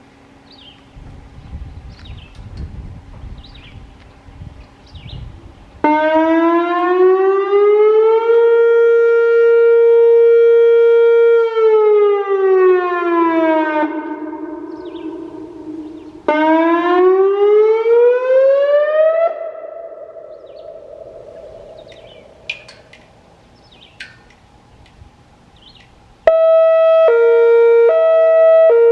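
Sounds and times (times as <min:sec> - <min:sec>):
electronic warning siren: 0:05.8 - 0:22.6, 0:26.3 - 0:28.9.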